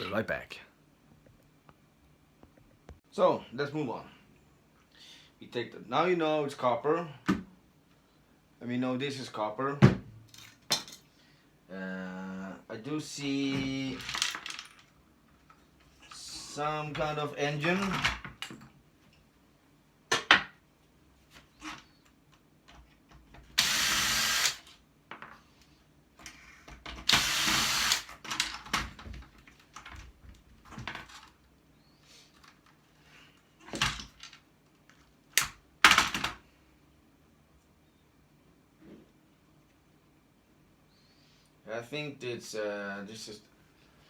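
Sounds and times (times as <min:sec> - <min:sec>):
power tool running: 0:23.6 - 0:24.7, 0:27.1 - 0:28.1.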